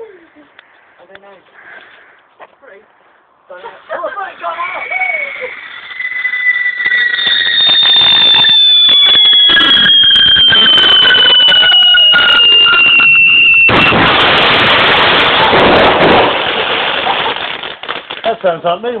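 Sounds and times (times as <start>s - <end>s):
firework hissing crackle: 3.9s - 18.3s
firework whistling: 4.2s - 18.1s.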